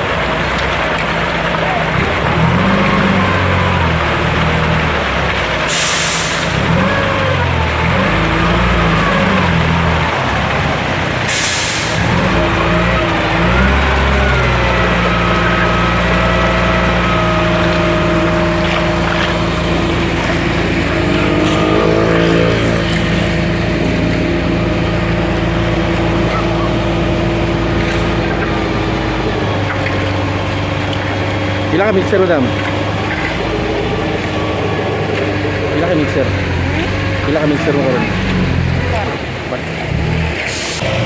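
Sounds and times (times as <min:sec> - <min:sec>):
diesel truck engine running: 0:00.0 - 0:41.0
air brake hiss: 0:05.7 - 0:06.6, 0:11.3 - 0:12.1.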